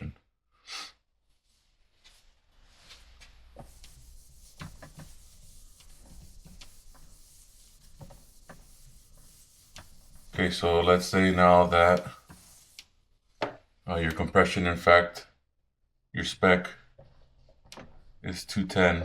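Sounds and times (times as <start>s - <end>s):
low room noise: 1.0s - 15.5s.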